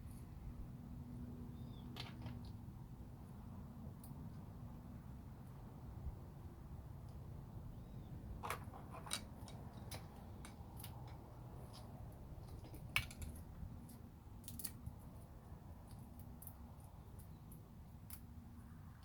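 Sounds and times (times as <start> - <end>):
sharp clicks and snips: 9.0 - 14.9.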